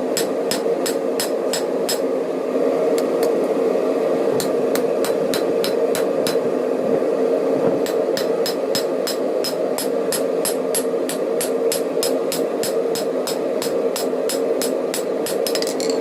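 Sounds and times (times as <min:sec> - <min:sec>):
hammer ringing on anvil: 0:15.4 - 0:16.0.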